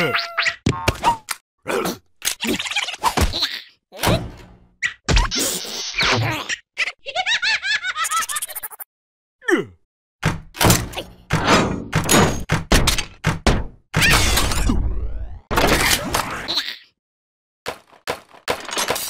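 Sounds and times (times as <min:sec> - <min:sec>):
thunks and whacks: 0:10.2 - 0:16.3.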